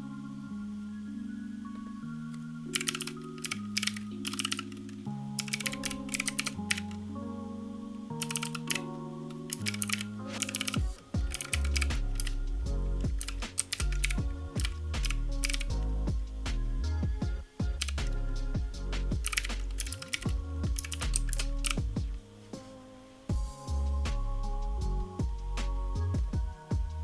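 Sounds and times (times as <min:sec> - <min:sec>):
background music with chords: 0:00.0 - 0:27.0
clicky keyboard typing: 0:02.7 - 0:07.0, 0:08.2 - 0:08.9, 0:09.5 - 0:12.3, 0:19.2 - 0:21.8
heavy bass line: 0:10.8 - 0:22.2, 0:23.3 - 0:27.0.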